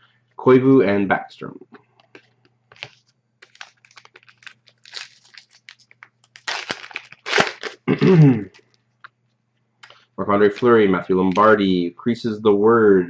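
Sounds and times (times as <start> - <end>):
foil wrapper crinkling: 2.1 - 7.9, 9.8 - 11.6.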